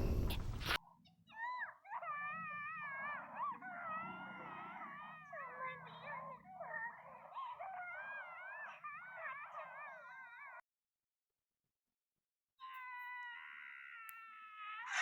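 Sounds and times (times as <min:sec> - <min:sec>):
steady high-pitched scream: 0:02.0 - 0:10.1, 0:13.1 - 0:15.0
cartoon wailing screams: 0:02.0 - 0:10.6, 0:12.7 - 0:15.0.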